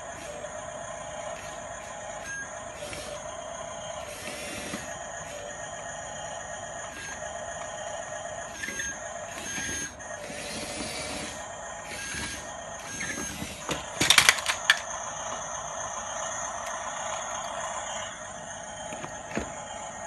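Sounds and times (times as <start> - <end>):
toy bulldozer motor whine and rattle: 0.0 - 20.0
sharp clattering clicks: 13.7 - 14.9.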